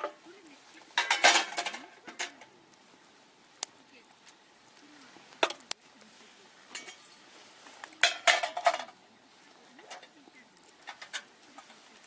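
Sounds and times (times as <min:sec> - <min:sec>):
dishes and cutlery clinking: 0:01.0 - 0:02.5, 0:06.7 - 0:07.2, 0:08.0 - 0:09.0.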